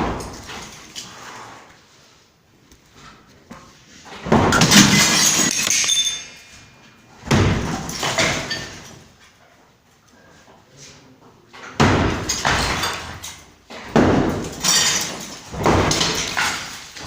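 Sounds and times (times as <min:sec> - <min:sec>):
material crashing and clattering: 0:04.0 - 0:06.5, 0:11.8 - 0:17.0.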